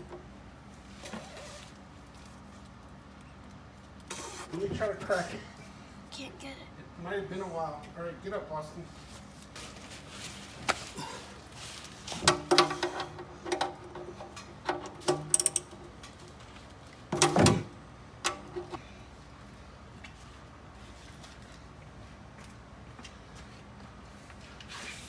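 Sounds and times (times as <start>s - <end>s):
wrench clinking and knocking: 14.7s - 15.8s.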